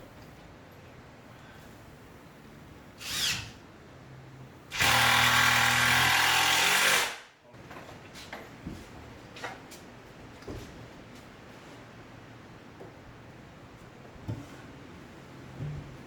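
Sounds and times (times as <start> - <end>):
power drill running: 3.0 - 3.6, 4.7 - 7.2.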